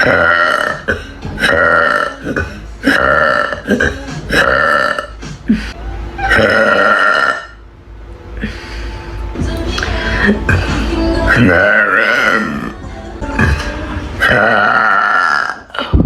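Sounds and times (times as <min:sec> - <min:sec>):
woman burping loudly: 0:00.0 - 0:05.2, 0:06.3 - 0:07.6, 0:11.3 - 0:16.0.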